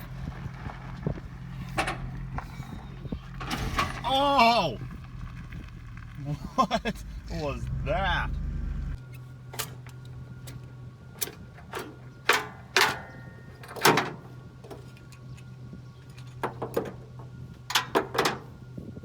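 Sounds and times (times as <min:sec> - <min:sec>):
steady low hum: 0:00.0 - 0:13.6.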